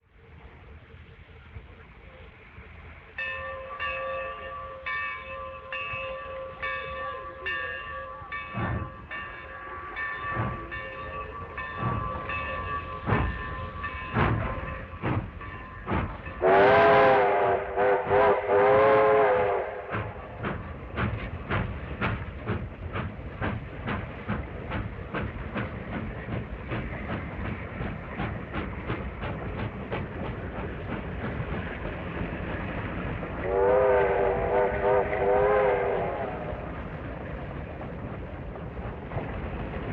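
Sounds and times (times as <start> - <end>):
train bell ringing: 3.0 - 17.0
train wheels clicking over rail joints: 7.7 - 39.9
train horn blasts: 16.4 - 20.2, 33.4 - 36.4.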